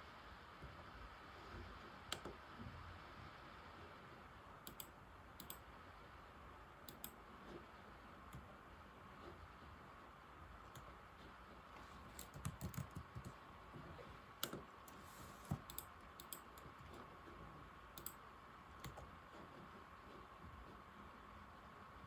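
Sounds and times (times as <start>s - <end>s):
laptop keyboard typing clicks: 4.7s - 5.6s, 6.9s - 7.2s, 12.1s - 13.4s, 14.4s - 17.0s, 18.0s - 18.2s.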